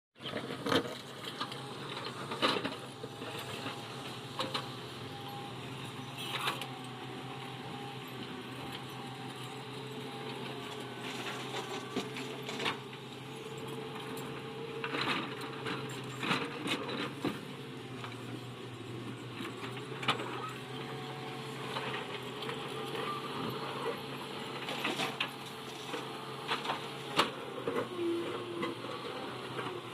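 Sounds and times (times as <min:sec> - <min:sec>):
excavator diesel engine running: 0:00.2 - 0:29.9.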